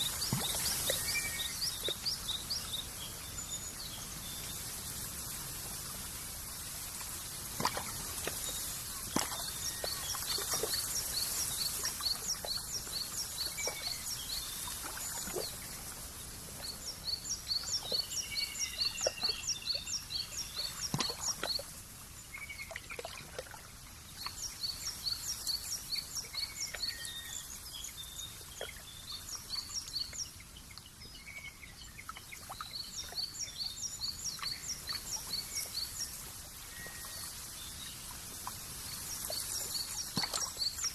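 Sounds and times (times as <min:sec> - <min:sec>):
steady hiss: 0:00.0 - 0:22.4, 0:33.9 - 0:40.9.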